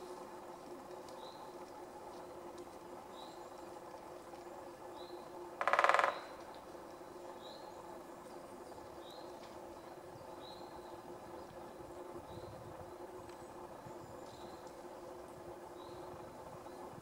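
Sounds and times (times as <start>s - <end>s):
woodpecker drumming on wood: 5.6s - 6.6s.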